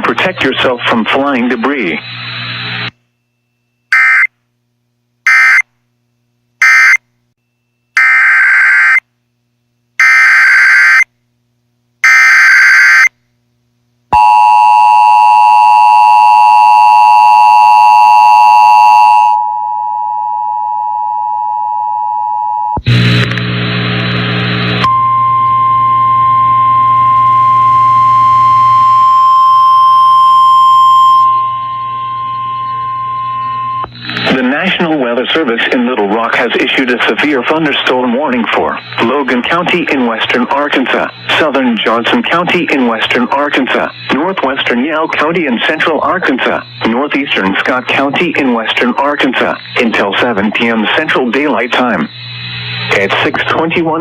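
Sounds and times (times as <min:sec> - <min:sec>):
steady alarm tone: 0:03.2 - 0:04.3, 0:05.3 - 0:05.6, 0:06.6 - 0:09.0, 0:12.0 - 0:13.1, 0:14.2 - 0:22.8, 0:24.8 - 0:33.9
long steady alert tone: 0:14.2 - 0:22.8, 0:24.8 - 0:33.9
burst of static-like noise: 0:22.8 - 0:24.8, 0:33.9 - 0:54.0.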